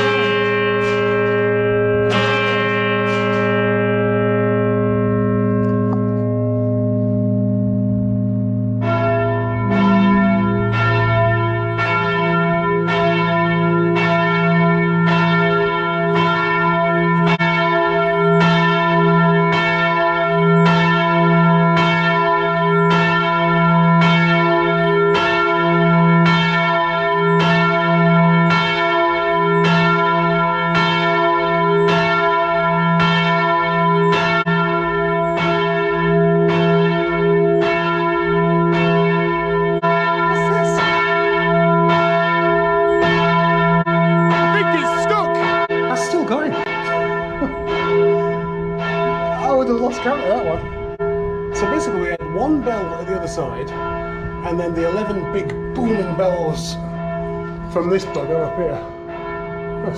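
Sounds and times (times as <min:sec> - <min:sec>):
lingering bell hum: 0:00.0 - 0:18.9
church bells ringing: 0:00.0 - 0:59.9.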